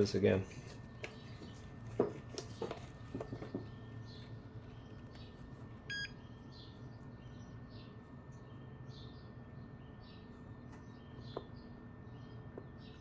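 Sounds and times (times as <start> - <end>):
short electronic beep: 5.9 - 6.1.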